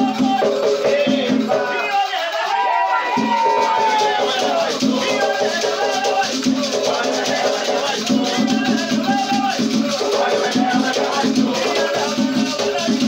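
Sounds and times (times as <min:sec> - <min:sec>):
rattles shaken in rhythm: 0:00.0 - 0:13.0
voices singing: 0:00.0 - 0:13.0.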